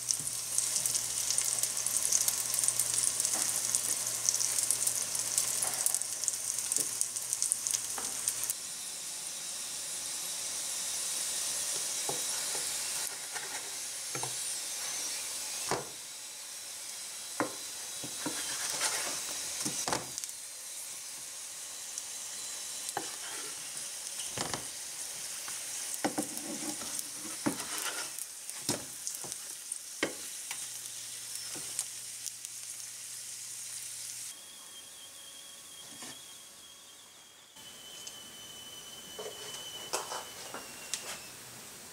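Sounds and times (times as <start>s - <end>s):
oil sizzling in a pan: 0.0s - 41.9s.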